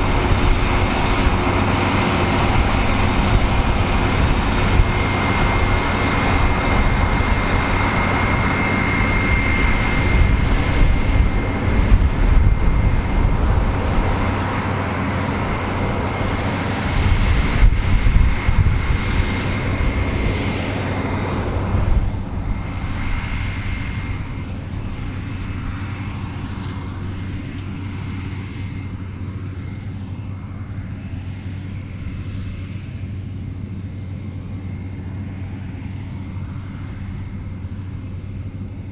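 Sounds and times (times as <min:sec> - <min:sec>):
combine harvester running: 0:00.0 - 0:38.9.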